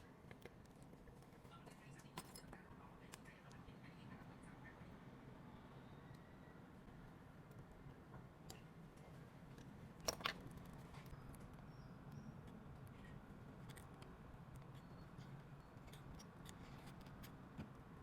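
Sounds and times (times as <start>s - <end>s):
low steady hum: 0.0s - 18.0s
small tools clicking on phone: 12.1s - 17.8s.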